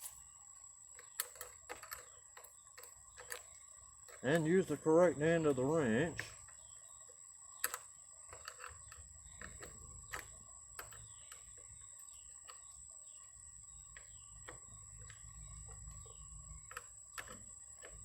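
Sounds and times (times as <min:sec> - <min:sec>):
faint bird chirps: 0:00.0 - 0:18.0.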